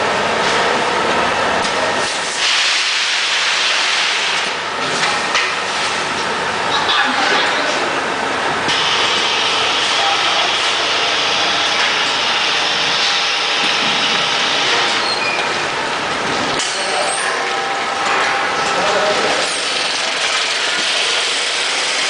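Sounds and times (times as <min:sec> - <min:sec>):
packaging machine running: 0:08.7 - 0:22.0.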